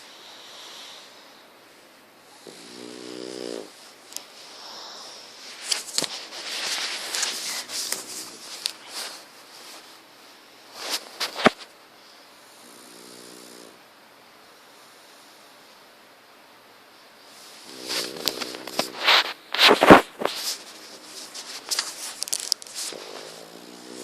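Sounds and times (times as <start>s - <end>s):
dog snoring: 2.3s - 3.8s, 12.5s - 13.8s, 17.6s - 19.2s, 22.8s - 24.0s.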